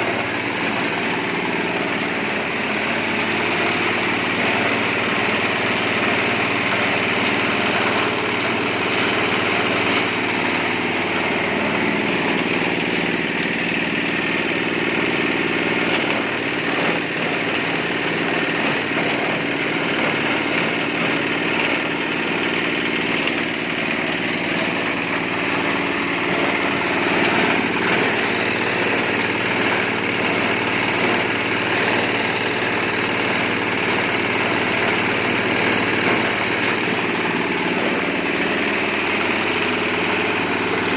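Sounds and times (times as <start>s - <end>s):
compost shredder engine drone: 0.0s - 40.9s.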